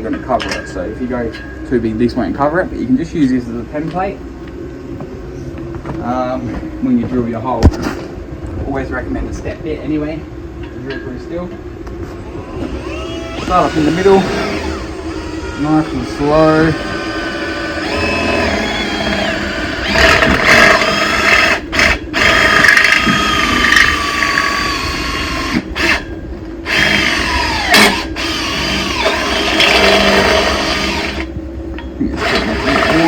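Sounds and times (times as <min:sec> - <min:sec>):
power drill cutting steel: 0:12.4 - 0:26.1, 0:26.7 - 0:31.3, 0:32.1 - 0:33.0.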